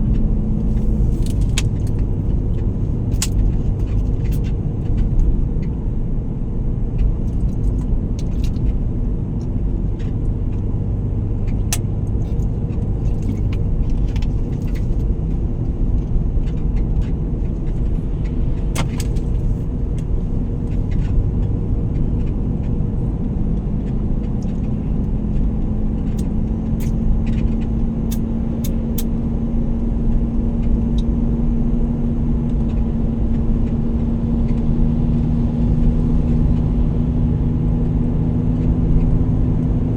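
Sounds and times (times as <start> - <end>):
vehicle engine and road rumble: 0.0 - 39.9
light rattling clicks: 11.4 - 29.1.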